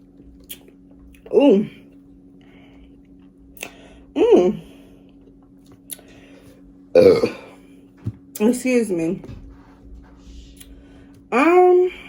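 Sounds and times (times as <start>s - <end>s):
woman burping: 6.9s - 7.6s.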